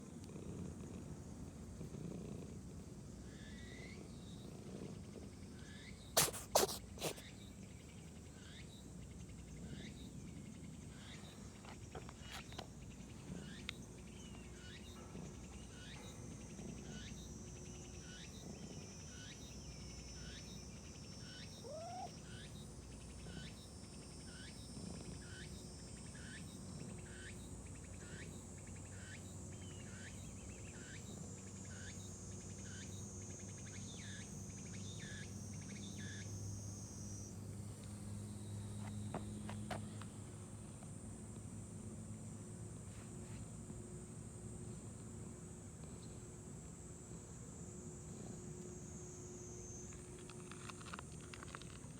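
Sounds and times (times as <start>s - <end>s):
cat purring: 0.0s - 3.0s, 3.7s - 5.4s
cat sneezing: 6.2s - 7.2s.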